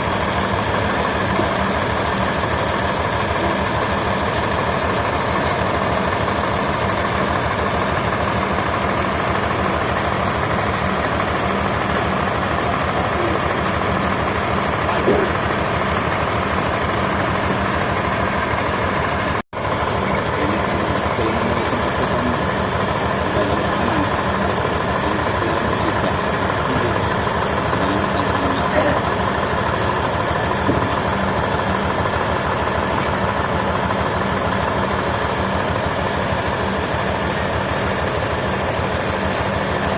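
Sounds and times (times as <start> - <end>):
sawmill machinery drone: 0.0 - 39.9.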